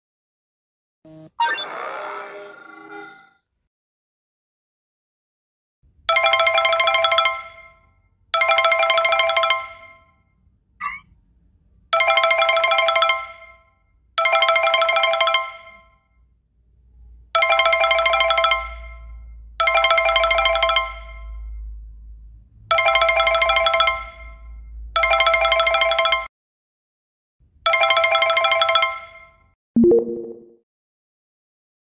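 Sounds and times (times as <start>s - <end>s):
chiming call ringtone: 6.1s - 11.0s, 12.0s - 16.1s, 17.4s - 21.5s, 22.7s - 26.3s, 27.7s - 30.4s.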